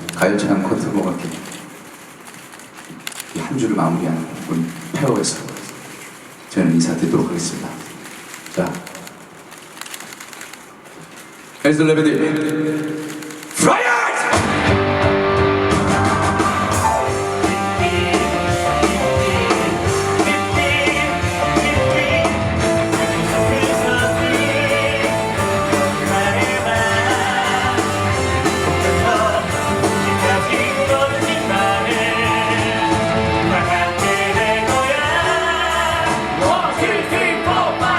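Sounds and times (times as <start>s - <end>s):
singing over rock band: 13.6s - 37.9s.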